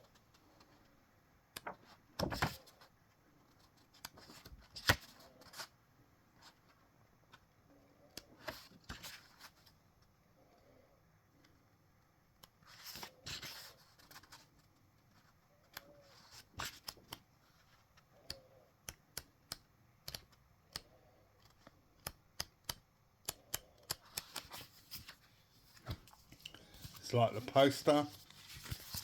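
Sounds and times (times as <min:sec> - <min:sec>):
paper clicks and crinkles: 0:01.5 - 0:02.9, 0:03.5 - 0:05.7, 0:08.2 - 0:09.8, 0:12.4 - 0:18.4, 0:21.4 - 0:29.0
paper rustling: 0:01.6 - 0:02.9, 0:12.6 - 0:17.8, 0:24.0 - 0:29.0.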